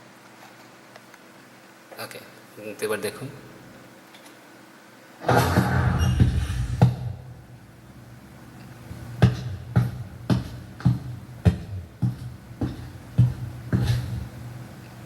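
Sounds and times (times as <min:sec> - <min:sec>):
door opening: 0:05.2 - 0:07.0
boot footsteps: 0:09.2 - 0:14.3.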